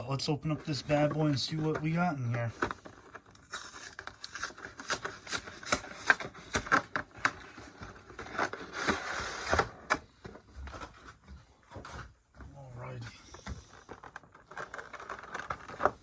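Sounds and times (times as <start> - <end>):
wrapper crinkling: 2.7 - 9.0, 13.7 - 16.0.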